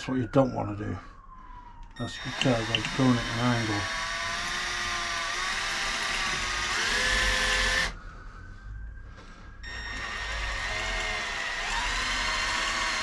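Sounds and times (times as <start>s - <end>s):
electric drill boring into metal: 2.1s - 8.0s, 9.6s - 13.0s.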